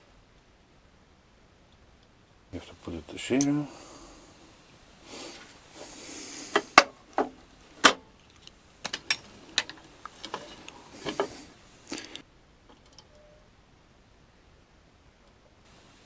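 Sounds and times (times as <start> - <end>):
rustling: 2.6 - 12.2
hard objects clicking and knocking: 2.7 - 12.2.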